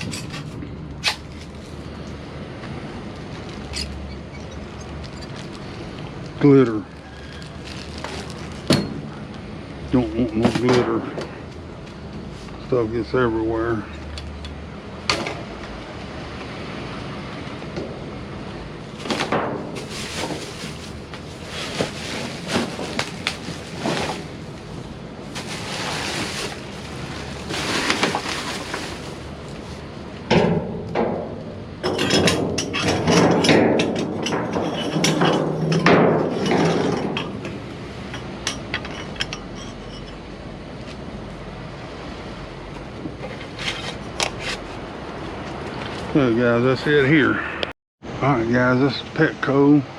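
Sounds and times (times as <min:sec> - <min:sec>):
rummaging through items: 0:03.4 - 0:09.3, 0:18.9 - 0:30.0, 0:31.8 - 0:40.1
knocks and clinks: 0:30.3 - 0:40.2.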